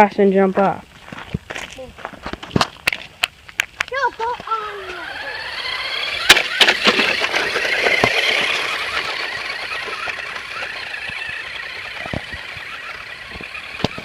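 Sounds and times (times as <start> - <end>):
wheels driving over gravel: 0.5 - 14.0
electric motor whining: 4.2 - 14.0.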